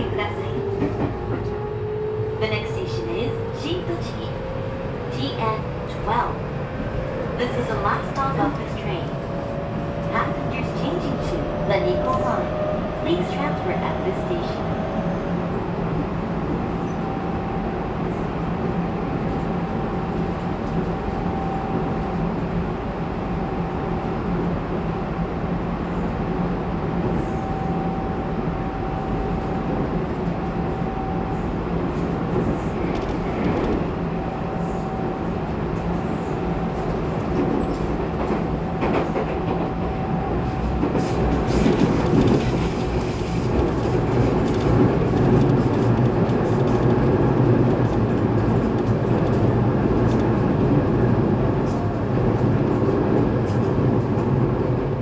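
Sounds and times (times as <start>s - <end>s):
train wheels on rails: 0.0s - 14.6s, 31.5s - 55.0s.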